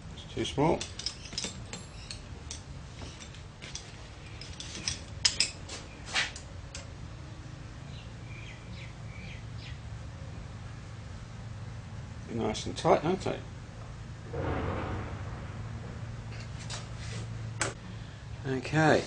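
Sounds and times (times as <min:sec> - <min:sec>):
allen keys clinking on steel: 0:00.8 - 0:05.6.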